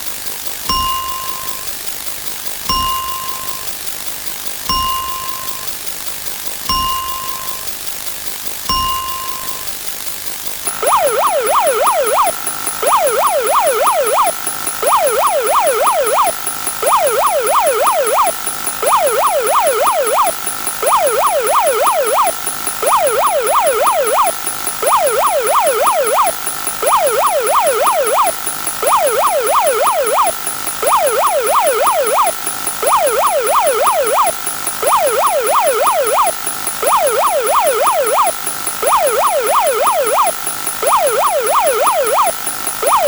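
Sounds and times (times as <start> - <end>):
electronic siren yelping: 10.7 - 43.0.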